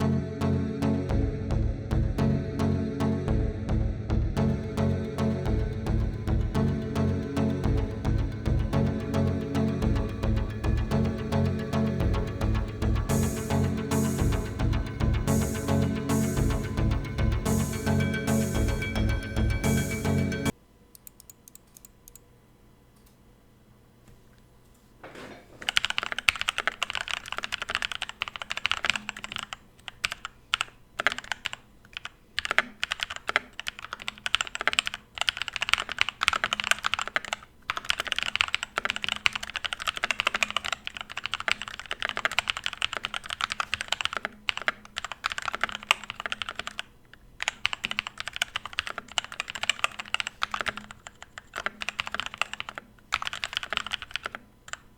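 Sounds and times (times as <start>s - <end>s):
mechanical keyboard typing: 25.6s - 54.9s.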